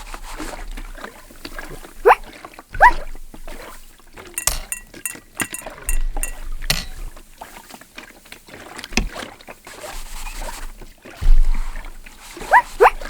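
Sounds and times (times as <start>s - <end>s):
sharp knocks and clicks: 4.4s - 7.2s.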